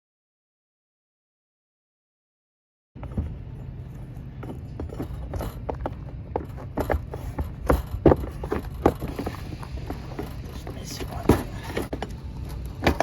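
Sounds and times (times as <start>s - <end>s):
knocks and scrapes on rubber shingles: 3.0s - 13.0s
low steady rumble: 3.0s - 13.0s.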